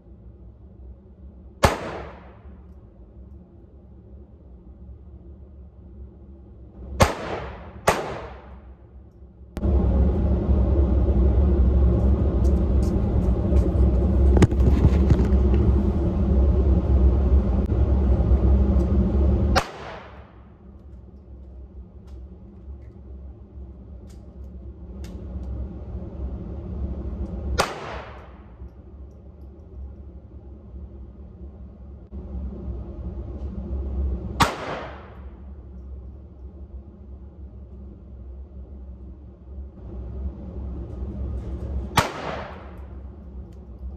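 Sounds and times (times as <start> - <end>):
loud low rumble: 0.0 - 43.9
gunshots: 1.6 - 2.4, 7.0 - 8.6, 19.6 - 20.2, 27.6 - 28.4, 34.4 - 35.3, 42.0 - 42.8.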